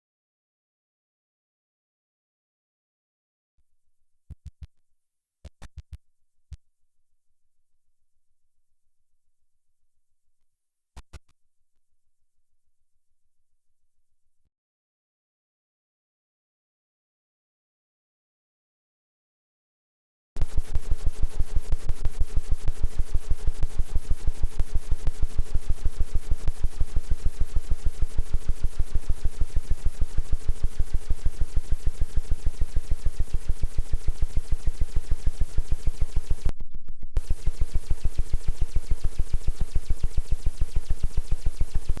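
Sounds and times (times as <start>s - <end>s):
steady hum-like tone: 20.4s - 42.0s.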